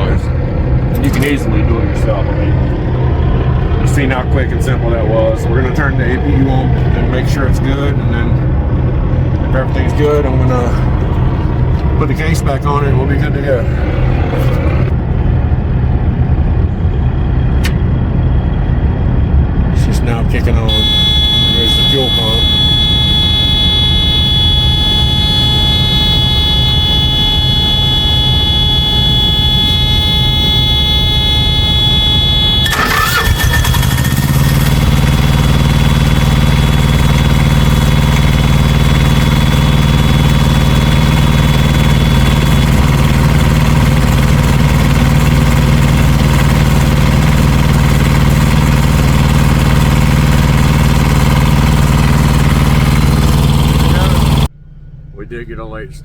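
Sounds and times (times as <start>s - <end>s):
diesel engine cranking and running: 0.0s - 55.8s
electric fuel pump whine: 20.7s - 54.5s.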